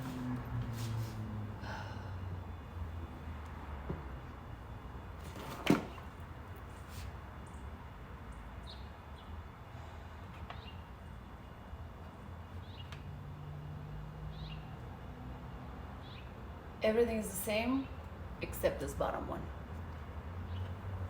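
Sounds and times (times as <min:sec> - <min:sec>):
low steady hum: 0:00.0 - 0:09.0.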